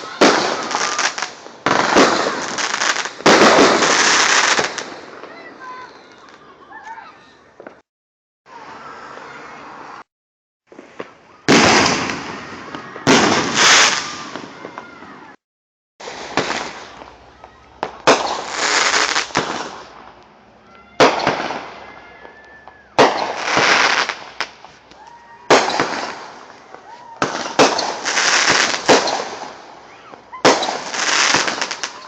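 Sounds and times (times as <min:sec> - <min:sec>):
firework bangs: 0:00.0 - 0:06.3, 0:10.7 - 0:15.4, 0:16.0 - 0:20.2, 0:20.9 - 0:32.0
firework hiss: 0:27.3 - 0:29.8.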